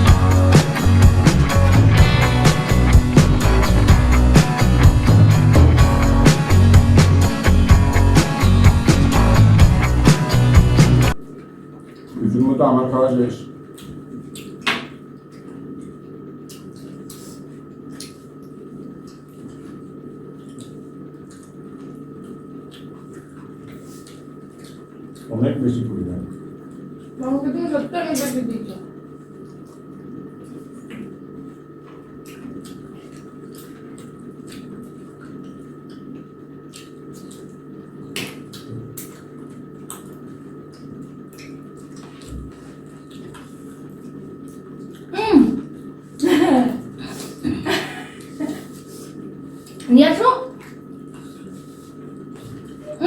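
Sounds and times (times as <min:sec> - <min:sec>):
steady hum: 0:00.0 - 0:53.0
wet chewing and squelching: 0:13.6 - 0:25.4, 0:29.3 - 0:45.1, 0:48.2 - 0:52.8.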